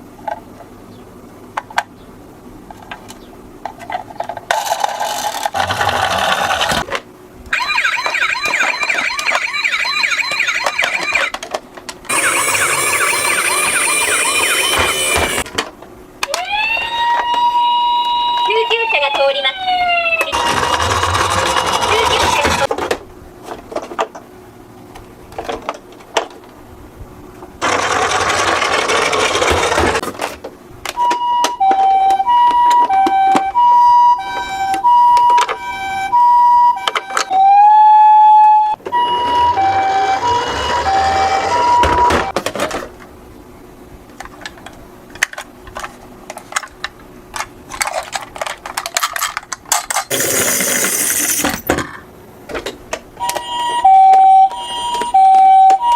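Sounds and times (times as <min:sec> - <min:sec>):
toy two-tone siren: 0:07.5 - 0:11.4, 0:12.1 - 0:15.4, 0:16.3 - 0:22.6, 0:31.0 - 0:42.3, 0:53.2 - 0:55.9.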